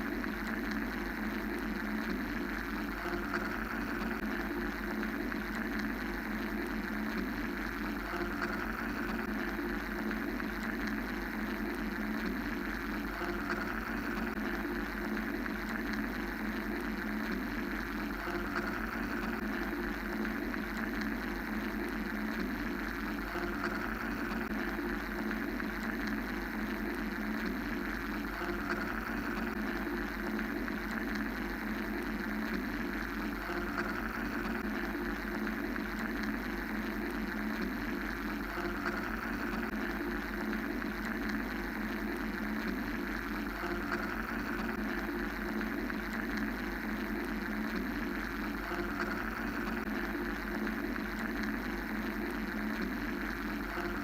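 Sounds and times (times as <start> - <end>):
low mechanical hum: 0.0 - 54.0.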